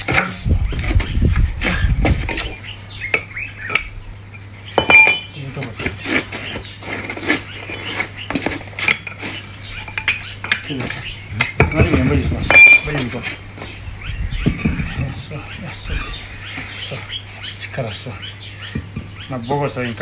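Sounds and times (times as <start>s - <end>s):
ringing metal clink: 3.1s - 5.4s, 8.9s - 10.6s, 12.5s - 13.0s
metal parts clinking and knocking: 4.8s - 5.3s, 8.8s - 10.7s, 11.4s - 13.0s.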